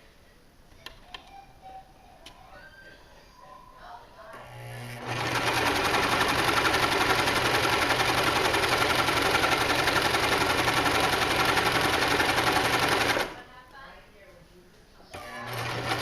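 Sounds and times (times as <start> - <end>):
sewing machine stitching: 4.4 - 13.4, 15.2 - 16.0.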